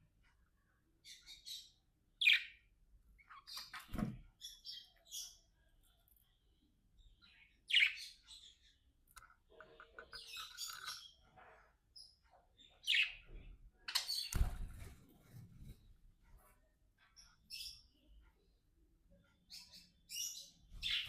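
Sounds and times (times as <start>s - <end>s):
budgerigars chirping and chattering: 0.9s - 14.5s, 19.3s - 21.0s.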